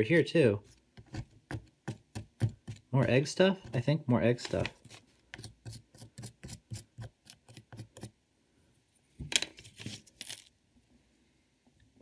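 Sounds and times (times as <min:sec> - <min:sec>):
digging tool scraping plaster: 0:04.5 - 0:08.1.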